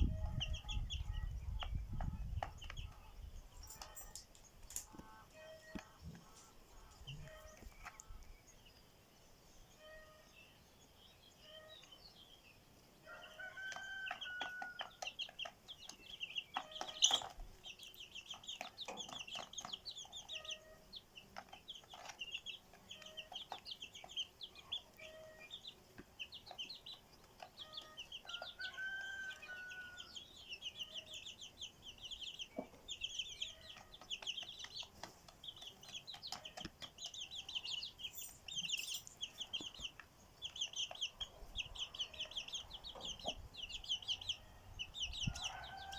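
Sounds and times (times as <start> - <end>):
high-pitched bird chirping: 0.0 - 4.2, 29.8 - 45.6
rooster crowing: 13.1 - 15.0, 28.3 - 30.2, 45.1 - 45.9
chickens clucking: 13.1 - 45.9.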